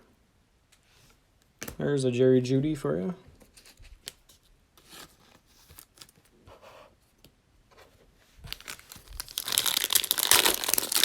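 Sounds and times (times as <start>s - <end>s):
card pack wrapper ripped open: 8.5s - 11.0s.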